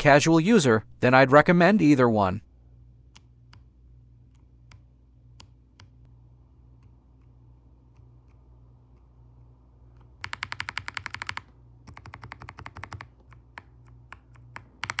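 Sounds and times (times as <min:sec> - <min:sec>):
mechanical keyboard key clicks: 0:10.2 - 0:15.0.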